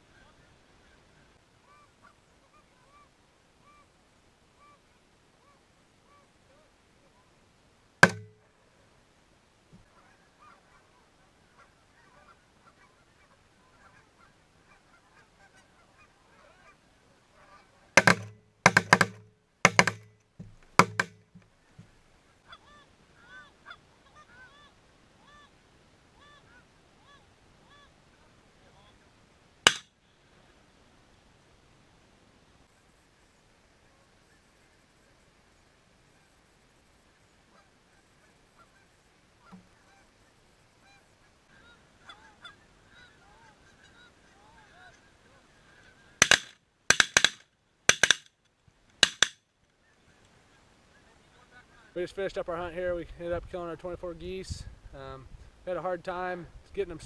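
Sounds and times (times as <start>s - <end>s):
geese honking: 9.8s - 19.1s, 22.4s - 25.6s, 37.5s - 46.5s
shotgun blasts: 29.7s - 29.9s.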